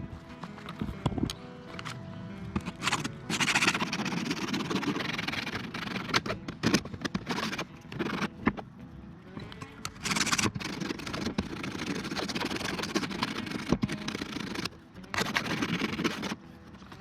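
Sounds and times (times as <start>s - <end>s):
power tool on metal plate: 2.6s - 8.6s, 9.5s - 16.4s
sharp clicks: 9.4s - 16.4s.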